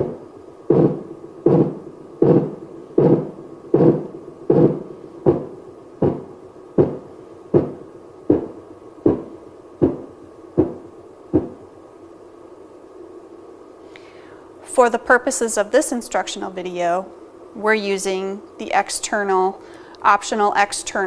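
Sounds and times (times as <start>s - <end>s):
heartbeat thumps from speaker: 0.0s - 11.6s
steady electronic hum: 0.0s - 21.0s.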